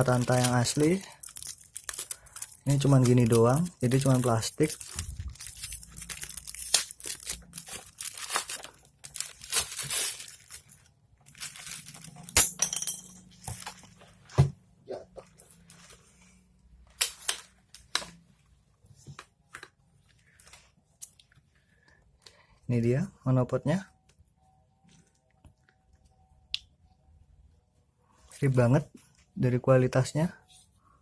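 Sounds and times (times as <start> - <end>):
plastic packaging crinkling: 0.0 - 12.4, 13.3 - 14.3.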